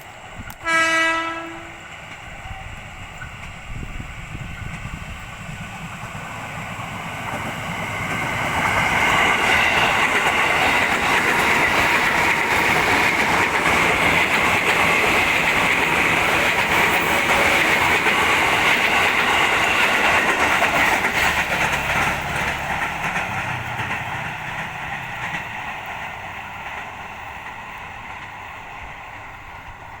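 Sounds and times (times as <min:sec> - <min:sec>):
electric train passing: 0:00.0 - 0:30.0
wheels clattering over rail joints: 0:05.9 - 0:27.5.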